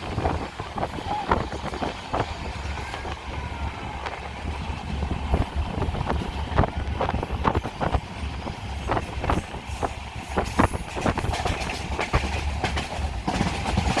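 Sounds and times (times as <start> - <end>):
train rumble: 0.0 - 14.0
wheels clacking over rails: 0.0 - 14.0.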